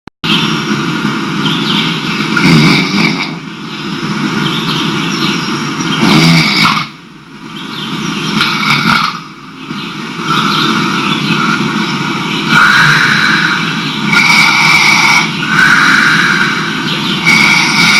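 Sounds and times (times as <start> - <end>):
man snoring loudly: 2.4 - 3.4, 6.0 - 7.0, 8.4 - 9.2, 12.5 - 17.9.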